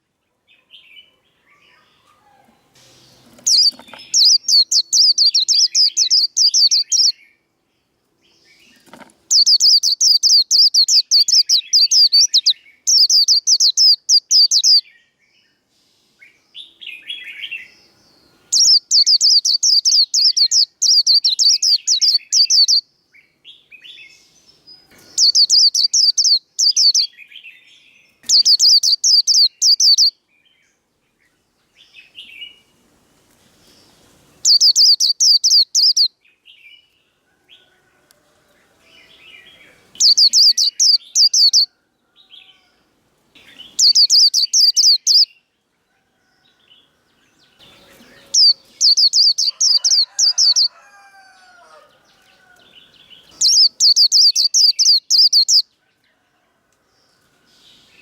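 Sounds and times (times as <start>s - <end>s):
soft bird chirps: 0.4s - 7.4s, 8.3s - 15.6s, 16.2s - 32.7s, 33.7s - 37.0s, 37.6s - 41.7s, 43.4s - 45.5s, 47.3s - 56.3s
bird singing high repeated notes: 43.4s - 45.3s.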